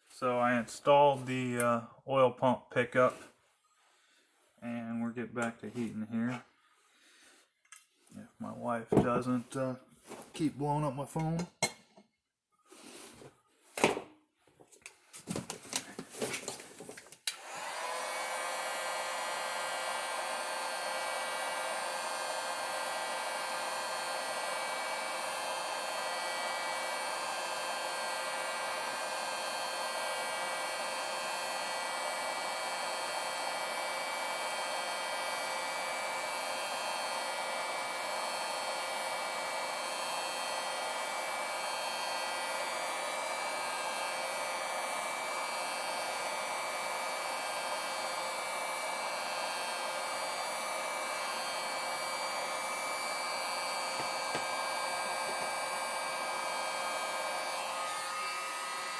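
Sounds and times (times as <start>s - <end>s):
heat gun blowing: 16.4s - 58.9s.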